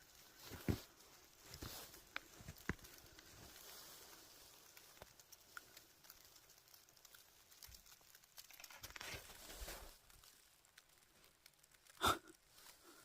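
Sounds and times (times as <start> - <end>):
faint crackles: 0.0 - 13.0.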